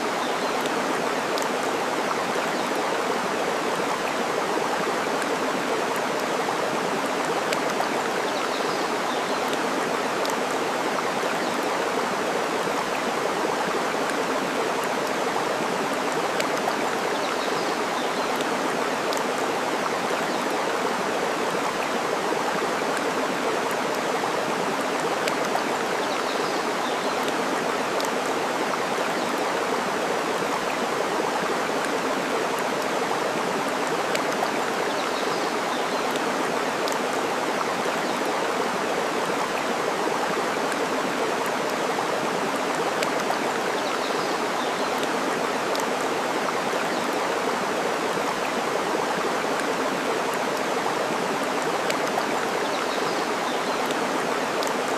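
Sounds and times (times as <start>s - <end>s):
running water: 0.0s - 54.9s.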